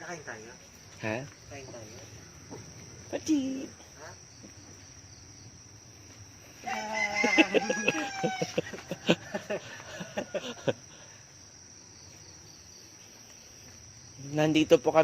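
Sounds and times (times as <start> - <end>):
crickets trilling: 0.0 - 15.0
rooster crowing: 6.6 - 11.0.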